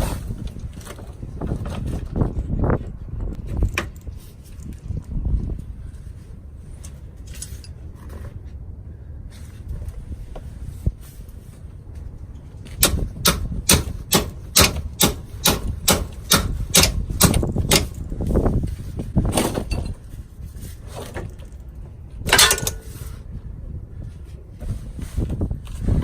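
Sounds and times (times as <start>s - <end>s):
hammer striking steel: 12.8s - 18.0s, 22.4s - 22.9s.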